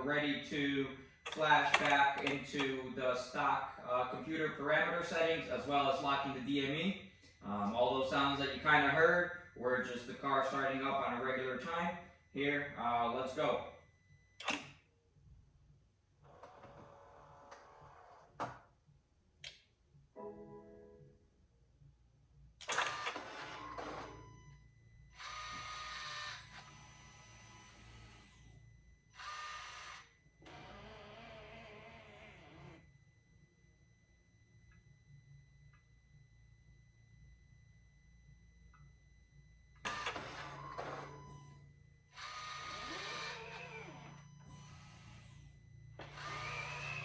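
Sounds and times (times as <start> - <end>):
electrical whirring and buzzing: 0.0 - 20.2, 21.8 - 47.0
faint steady hum: 23.7 - 47.0.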